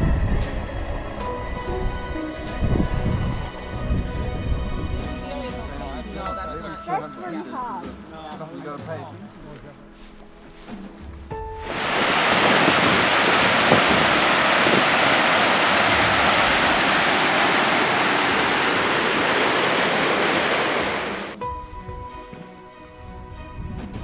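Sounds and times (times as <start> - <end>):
rush of fast-moving water: 11.6 - 21.4.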